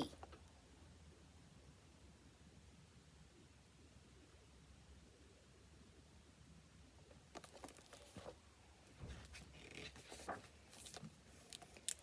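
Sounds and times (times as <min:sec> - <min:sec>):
paper rustling: 0:07.4 - 0:08.4, 0:09.0 - 0:12.0.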